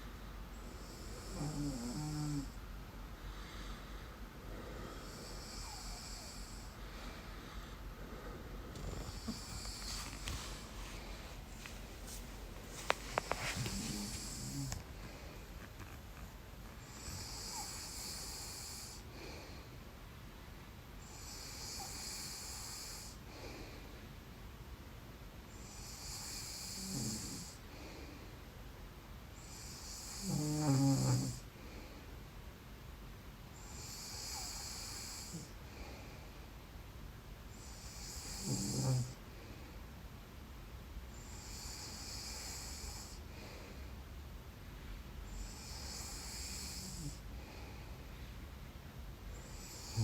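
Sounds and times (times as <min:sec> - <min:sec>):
person snoring: 0:00.8 - 0:02.6, 0:04.5 - 0:06.8, 0:08.1 - 0:10.4, 0:13.2 - 0:14.8, 0:16.9 - 0:19.4, 0:21.1 - 0:23.2, 0:25.7 - 0:27.6, 0:29.5 - 0:31.4, 0:33.7 - 0:35.5, 0:37.6 - 0:39.2, 0:45.4 - 0:47.2, 0:49.4 - 0:50.0.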